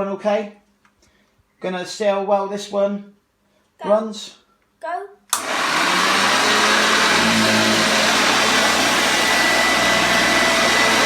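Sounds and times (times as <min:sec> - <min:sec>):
vacuum cleaner motor whining: 0:05.4 - 0:11.0.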